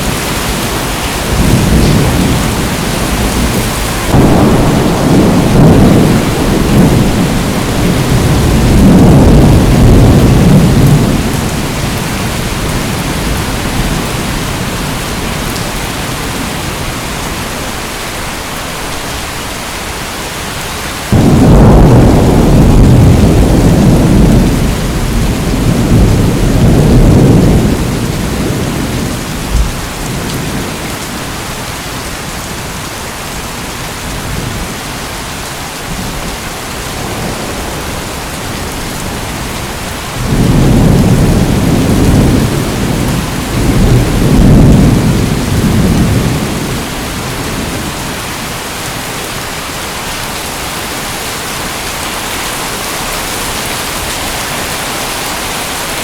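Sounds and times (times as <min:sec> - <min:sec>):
low rumbling thunder: 0:00.0 - 0:16.9, 0:21.1 - 0:31.4, 0:35.8 - 0:48.5
heavy rain: 0:00.0 - 0:56.0.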